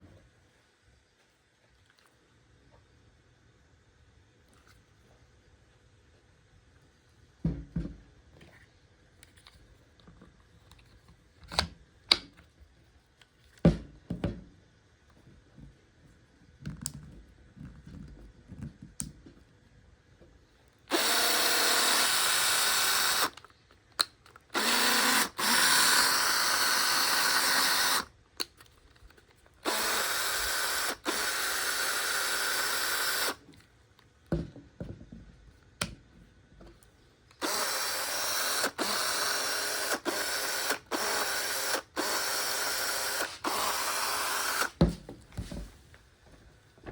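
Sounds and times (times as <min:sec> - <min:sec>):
cordless drill running: 0:20.9 - 0:23.4, 0:24.5 - 0:28.1, 0:29.6 - 0:33.4, 0:37.4 - 0:44.8.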